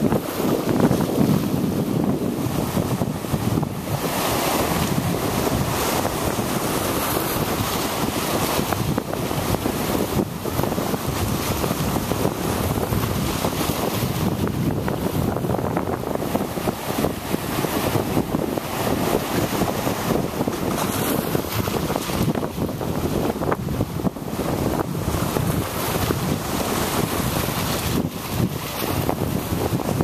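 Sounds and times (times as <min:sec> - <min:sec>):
surf washing on beach: 0:00.0 - 0:30.0
wind buffeting microphone: 0:00.0 - 0:30.0.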